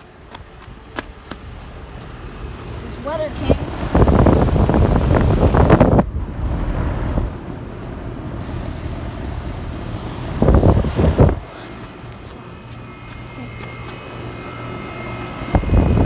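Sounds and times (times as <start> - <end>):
air conditioner low hum: 0.0 - 16.0
loud rushing noise: 2.4 - 11.8.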